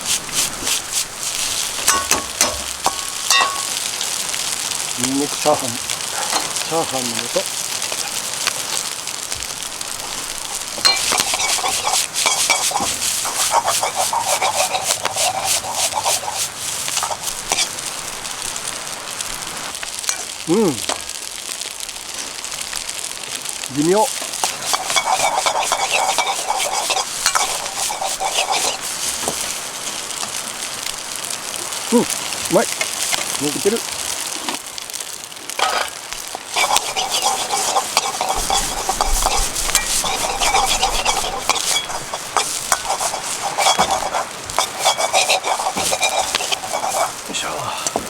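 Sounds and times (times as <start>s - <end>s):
scraping and clattering in metal wok: 0.0s - 3.9s, 10.7s - 17.9s, 24.3s - 30.0s, 35.6s - 48.0s
rice sizzling in a wok: 0.0s - 48.0s.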